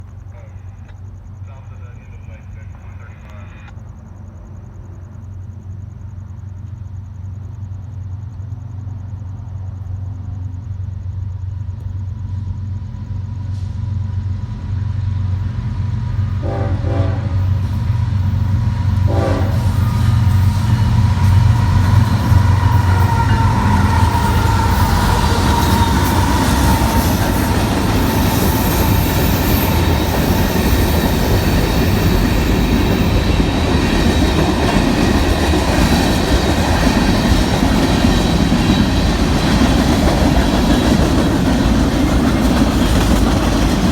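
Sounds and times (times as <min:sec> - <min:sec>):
diesel locomotive rumble: 0:00.0 - 0:43.9
rail cars clickety-clack: 0:10.1 - 0:43.9
train horn blasts: 0:16.4 - 0:17.6, 0:19.0 - 0:27.3.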